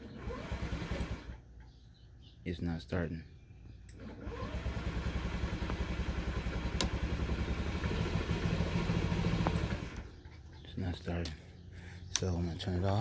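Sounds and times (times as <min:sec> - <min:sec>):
electric starter cranking engine: 0:00.0 - 0:01.4, 0:03.9 - 0:10.2.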